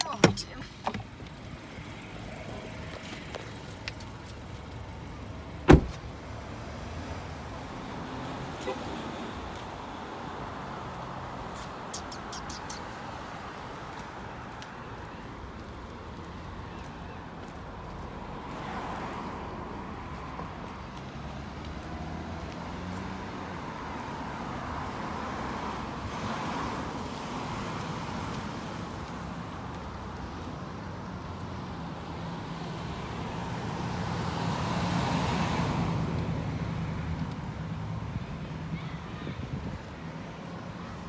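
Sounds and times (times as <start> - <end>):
engine hum: 0.0 - 7.3
vehicles passing: 0.0 - 41.0.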